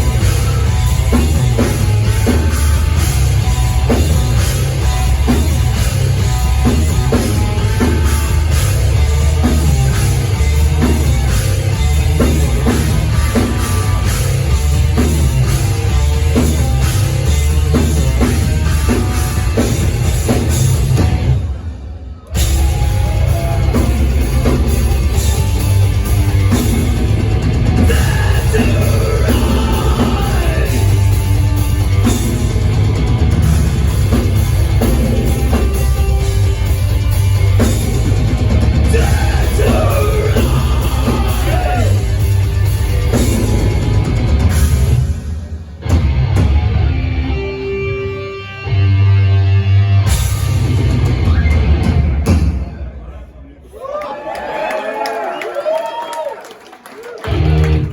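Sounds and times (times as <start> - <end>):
heavy metal band playing live: 0.0 - 52.9, 57.2 - 57.9
person singing: 27.8 - 31.3, 38.8 - 42.2.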